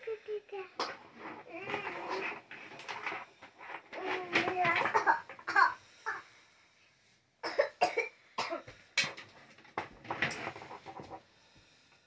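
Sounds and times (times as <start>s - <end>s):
person coughing: 7.4s - 8.7s.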